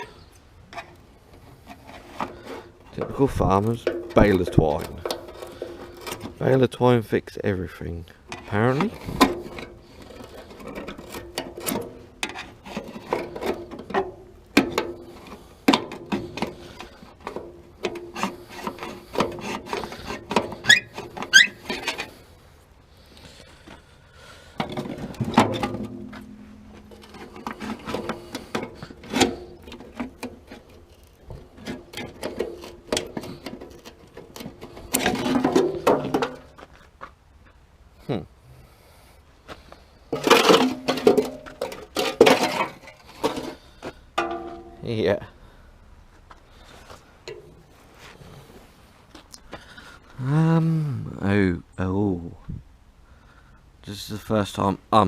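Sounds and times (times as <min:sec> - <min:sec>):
twine rubbing and scraping: 0:00.7 - 0:22.6, 0:24.6 - 0:36.7.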